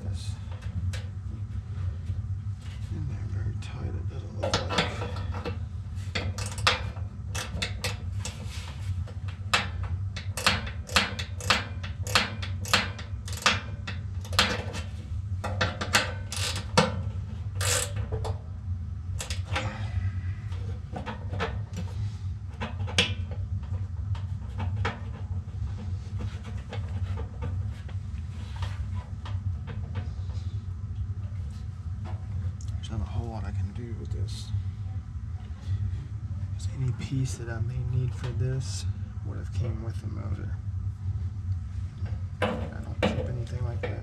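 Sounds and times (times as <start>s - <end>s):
steady low hum: 0.0s - 44.0s
wrench clicking and clanking on metal: 6.2s - 8.0s, 9.6s - 14.8s, 15.5s - 16.9s, 17.6s - 18.0s.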